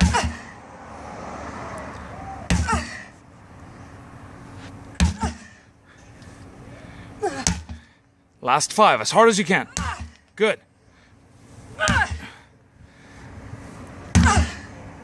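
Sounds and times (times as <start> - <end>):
sledgehammer striking tires: 0.0 - 0.6, 2.4 - 3.1, 4.9 - 5.6, 7.4 - 7.9, 9.7 - 10.2, 11.8 - 12.4, 14.1 - 14.8.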